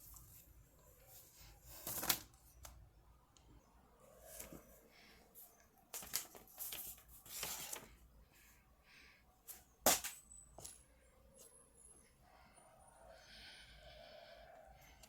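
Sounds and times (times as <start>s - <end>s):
paper rustling and crinkling: 0.0s - 2.8s, 5.4s - 8.0s.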